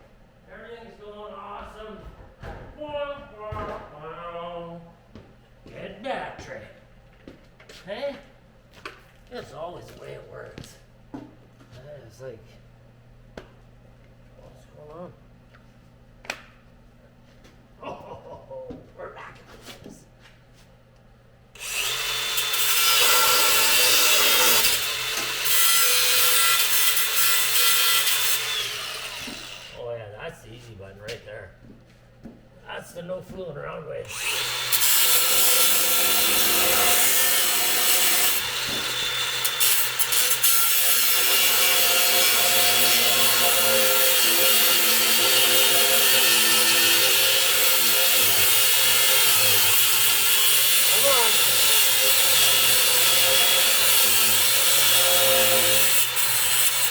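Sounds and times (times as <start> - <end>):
power saw cutting steel pipe: 21.6 - 29.8, 34.1 - 56.9.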